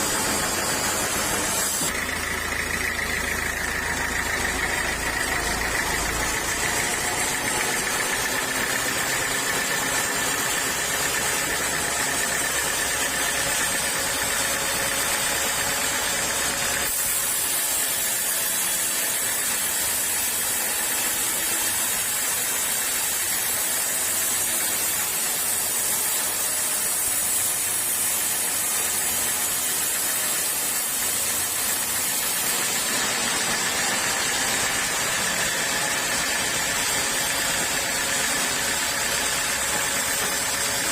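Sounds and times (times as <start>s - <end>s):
sawmill saw running: 0.0s - 40.9s.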